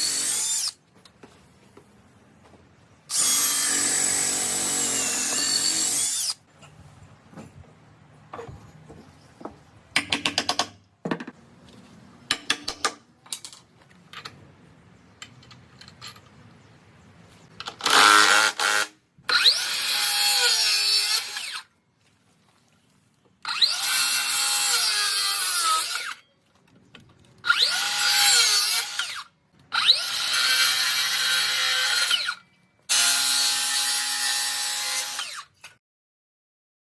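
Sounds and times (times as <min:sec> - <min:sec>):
power drill running: 0:03.1 - 0:06.4.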